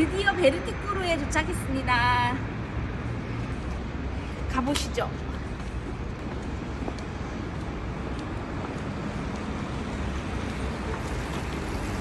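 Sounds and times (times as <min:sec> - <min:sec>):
road traffic rumble: 0:00.0 - 0:12.0.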